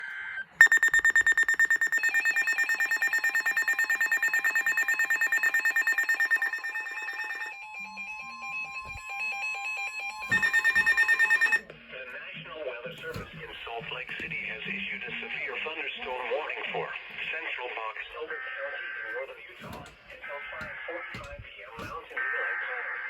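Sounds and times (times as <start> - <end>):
rapid electronic alarm beeping: 0.6 - 11.6
steady warning tone: 0.6 - 11.6.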